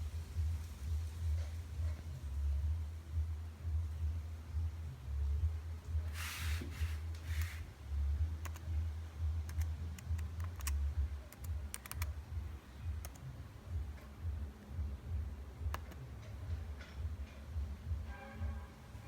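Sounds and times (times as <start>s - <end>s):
steady low hum: 0.0s - 19.0s
short rustle: 6.1s - 7.7s
laptop keyboard key clicks: 8.4s - 8.7s, 9.5s - 12.2s, 15.7s - 16.0s.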